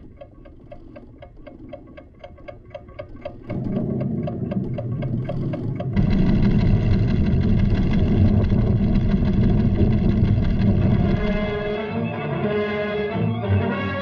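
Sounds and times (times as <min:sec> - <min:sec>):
rapid instrument ticking: 0:00.0 - 0:12.2
low rumble: 0:03.5 - 0:12.0
sustained tones: 0:03.5 - 0:14.0.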